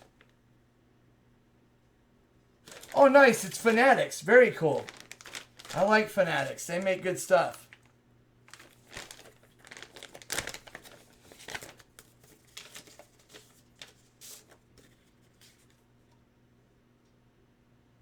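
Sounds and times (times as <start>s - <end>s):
plastic packaging crinkling: 2.7s - 14.9s.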